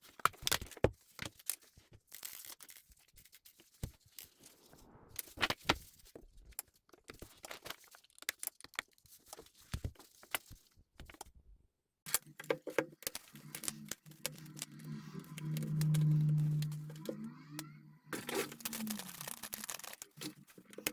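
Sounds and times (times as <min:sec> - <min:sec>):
low steady hum: 0:13.2 - 0:20.9.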